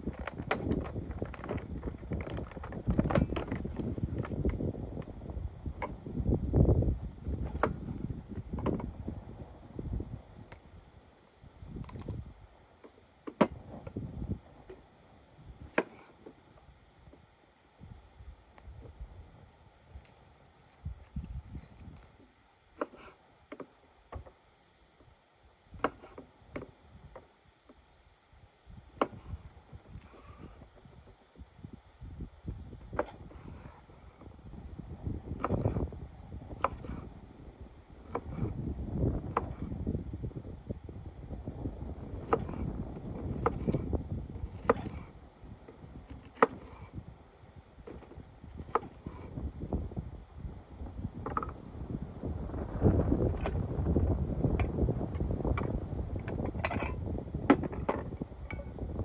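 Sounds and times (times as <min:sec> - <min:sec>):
sharp wooden cracks and knocks: 0:00.0 - 0:05.1, 0:07.3 - 0:08.9, 0:12.8 - 0:14.0, 0:15.6 - 0:16.4, 0:19.8 - 0:24.4, 0:35.3 - 0:35.9, 0:36.5 - 0:37.1, 0:37.9 - 0:39.8, 0:41.9 - 0:45.1, 0:45.7 - 0:47.0, 0:47.8 - 0:49.3, 0:53.2 - 0:58.6.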